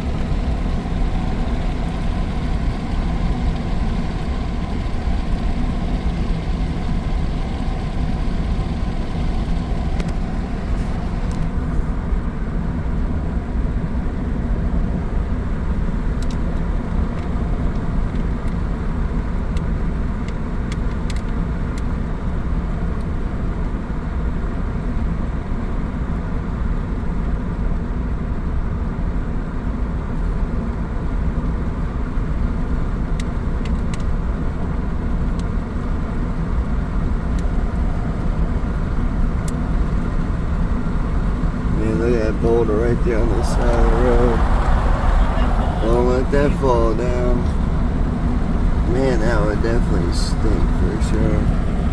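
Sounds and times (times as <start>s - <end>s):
vehicle road and engine rumble: 0.0s - 13.4s, 34.6s - 51.9s.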